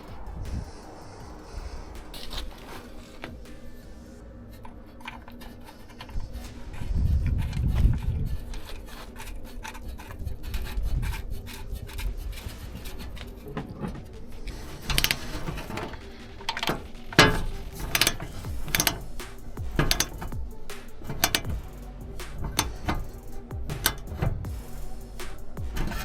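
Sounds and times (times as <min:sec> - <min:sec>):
hand tools clicking and clanking: 0:04.5 - 0:24.6, 0:25.4 - 0:26.0
metallic knocks: 0:14.8 - 0:24.5.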